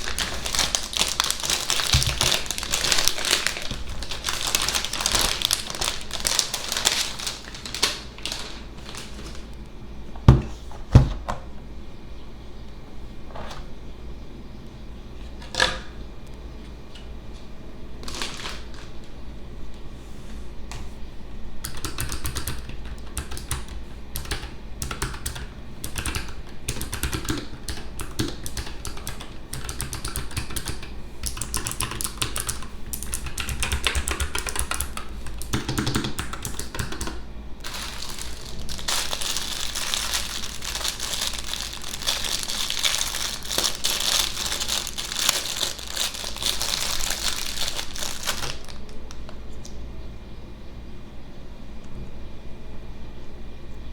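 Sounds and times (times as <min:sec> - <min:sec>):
packaging wrap crinkling: 0:00.0 - 0:09.7, 0:18.0 - 0:19.2, 0:33.2 - 0:49.4
keyboard clicks and taps: 0:21.6 - 0:37.2.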